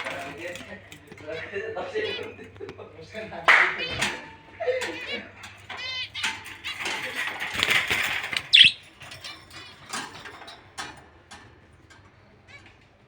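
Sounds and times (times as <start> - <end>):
small birds chirping: 0.0 - 13.0
birds fluttering wings: 4.8 - 10.9
loud sharp bird squawk: 8.5 - 8.8.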